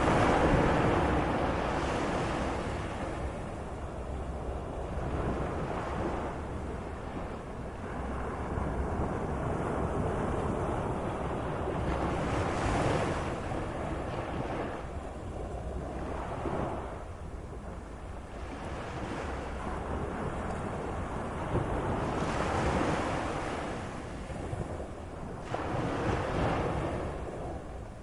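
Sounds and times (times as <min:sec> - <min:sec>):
sea waves washing: 0:00.0 - 0:28.0.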